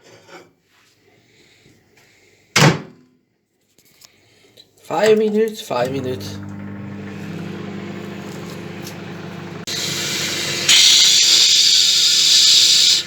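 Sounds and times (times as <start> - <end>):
microwave oven humming: 5.8 - 13.0
loud hiss from heating grapes: 9.6 - 13.0.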